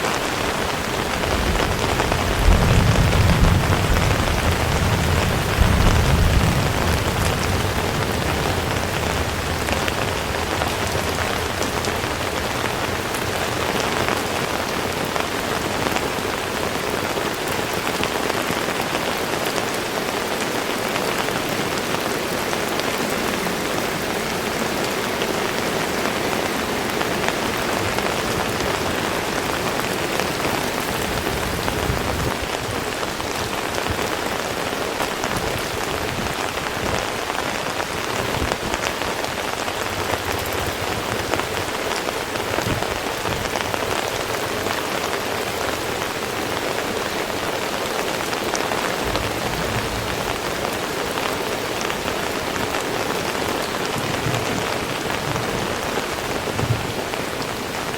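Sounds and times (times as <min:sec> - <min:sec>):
heavy rain falling: 0:00.0 - 0:57.9
low rumble: 0:49.0 - 0:52.3.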